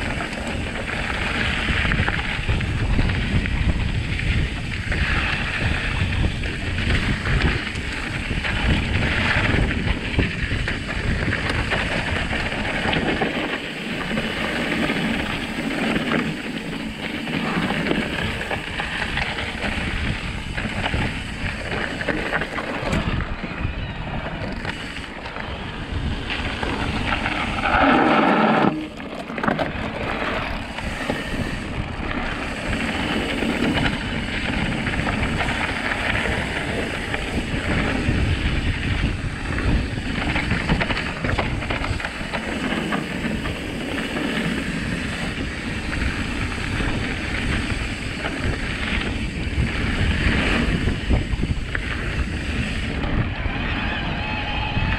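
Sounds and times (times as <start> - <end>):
tyres rumbling over dirt trail: 0.0 - 54.9
wind buffeting microphone: 0.0 - 54.9.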